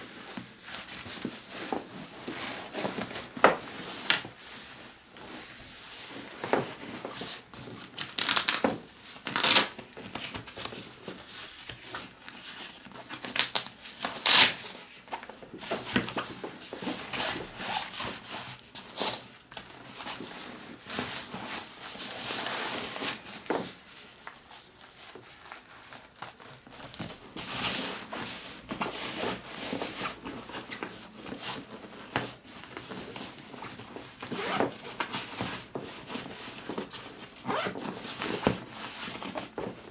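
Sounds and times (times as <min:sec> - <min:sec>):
bag rubbing and rustling: 0:32.6 - 0:39.9.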